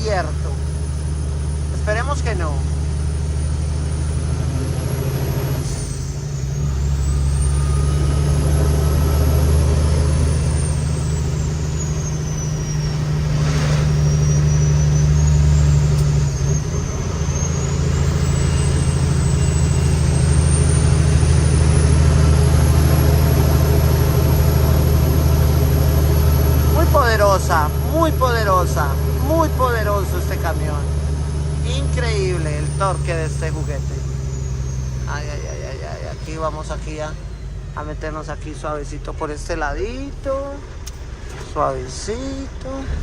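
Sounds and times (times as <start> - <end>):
truck diesel engine pulling hard: 0.0 - 43.0
high whistle: 10.5 - 20.8.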